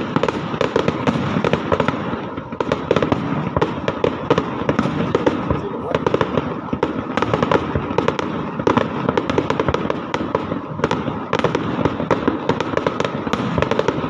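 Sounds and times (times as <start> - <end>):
fireworks cracking and popping: 0.0 - 14.0.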